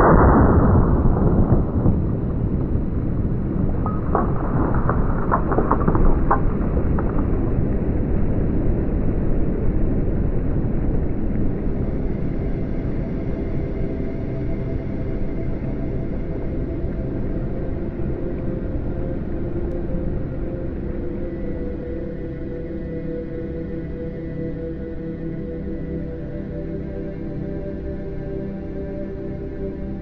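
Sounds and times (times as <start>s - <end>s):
deep steady rumble: 0.0s - 21.3s.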